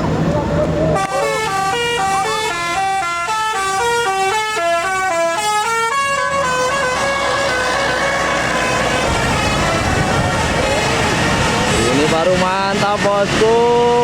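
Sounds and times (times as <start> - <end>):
bus horn playing tune: 0.9 - 12.0.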